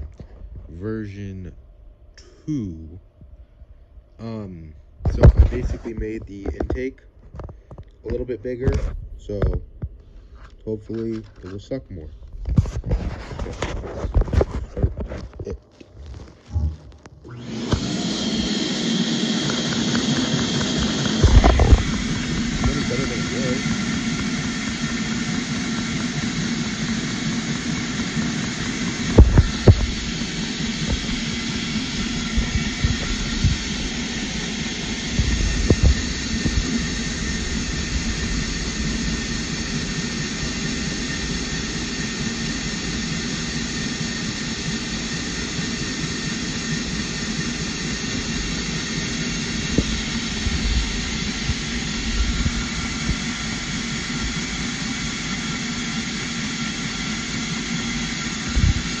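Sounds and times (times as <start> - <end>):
single-cylinder engine running: 17.2 - 59.0.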